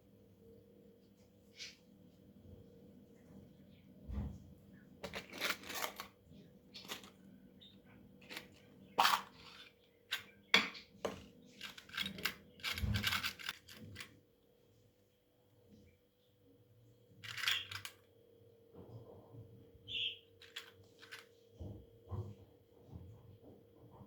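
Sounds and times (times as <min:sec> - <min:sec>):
small objects clicking and tapping: 0:20.4 - 0:21.2.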